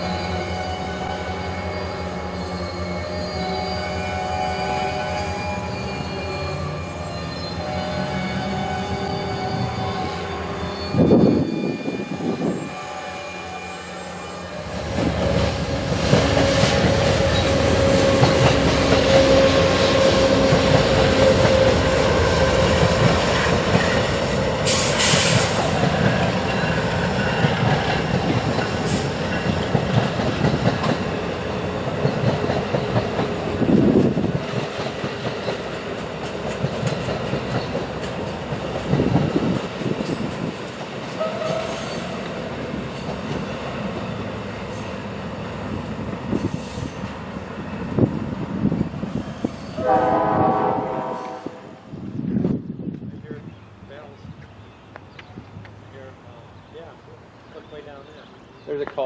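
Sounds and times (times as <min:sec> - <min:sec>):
wheels squealing on rails: 0:00.0 - 0:52.0
train wheels on rails: 0:00.0 - 0:53.2
sharp hiss: 0:24.6 - 0:25.8.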